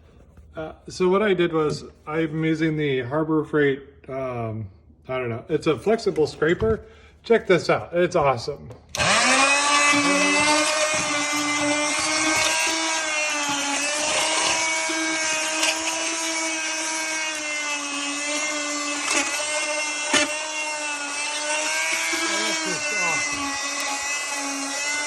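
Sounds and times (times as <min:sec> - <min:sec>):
multi-tool buzzing whine: 0:08.9 - 0:25.0.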